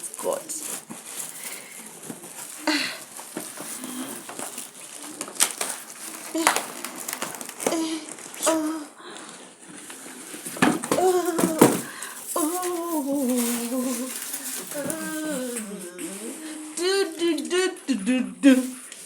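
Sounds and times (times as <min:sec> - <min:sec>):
knocks and handling sounds: 0:00.2 - 0:08.8, 0:09.6 - 0:15.7
woman humming: 0:10.9 - 0:18.9.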